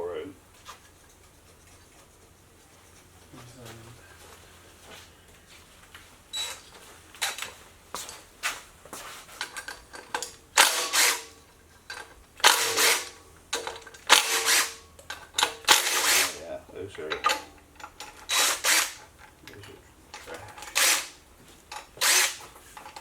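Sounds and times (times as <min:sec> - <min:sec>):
tools clicking and clanking: 0:05.9 - 0:08.6, 0:09.3 - 0:23.0
power tool running in bursts: 0:10.6 - 0:11.3, 0:12.4 - 0:13.1, 0:14.1 - 0:14.8, 0:15.7 - 0:16.4, 0:18.2 - 0:19.0, 0:20.6 - 0:21.2, 0:22.0 - 0:22.4.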